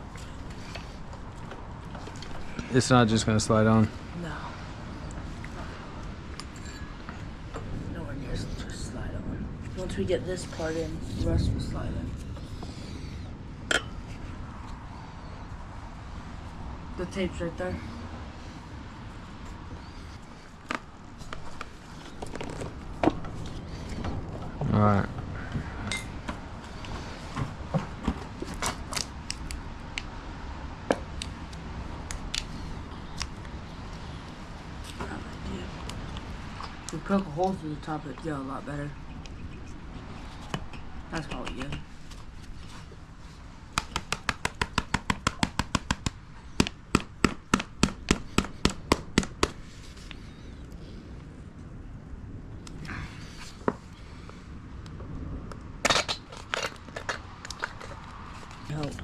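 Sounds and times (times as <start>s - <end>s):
hands and tools clicking and tapping: 40.4s - 42.2s, 43.7s - 49.6s.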